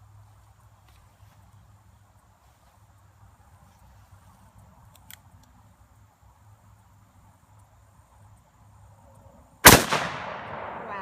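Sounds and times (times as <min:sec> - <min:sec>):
faint click: 0:04.8 - 0:05.6.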